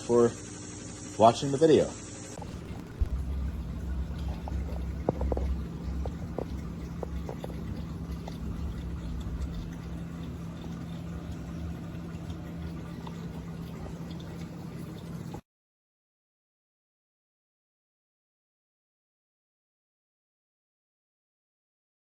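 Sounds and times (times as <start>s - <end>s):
low hum of aquarium filter: 0.0s - 15.4s
aquarium water trickling and dripping: 1.2s - 15.4s.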